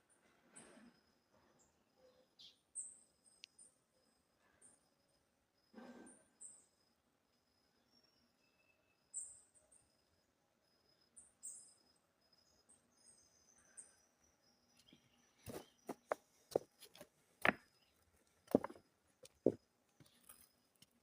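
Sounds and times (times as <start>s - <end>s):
birds chirping: 13.0s - 16.7s.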